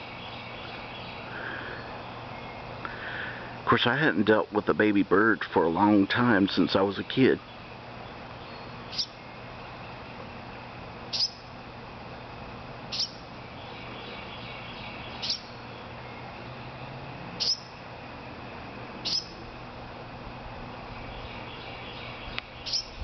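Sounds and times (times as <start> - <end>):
baby bird chirping: 8.5 - 9.2, 11.1 - 11.5, 12.9 - 13.2, 14.0 - 15.6, 17.4 - 17.7, 19.0 - 19.4, 22.1 - 23.0.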